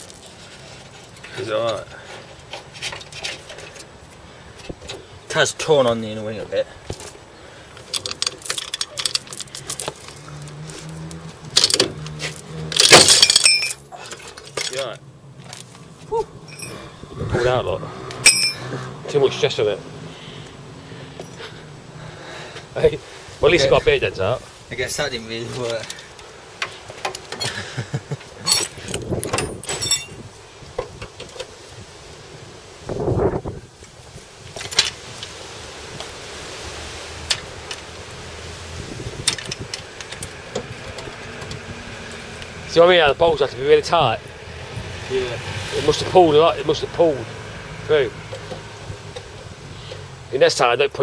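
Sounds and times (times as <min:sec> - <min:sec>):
metallic clicks and clinks: 0:07.8 - 0:10.1, 0:12.7 - 0:15.0, 0:16.5 - 0:16.9, 0:18.1 - 0:18.7, 0:28.4 - 0:30.2
sharp ringing metal clanks: 0:12.9 - 0:13.8, 0:16.5 - 0:16.8, 0:18.2 - 0:18.7, 0:28.5 - 0:30.2.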